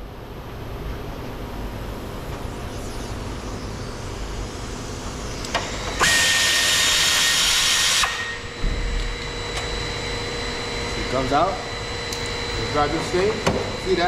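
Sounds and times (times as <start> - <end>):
power drill whine: 5.4 - 9.2.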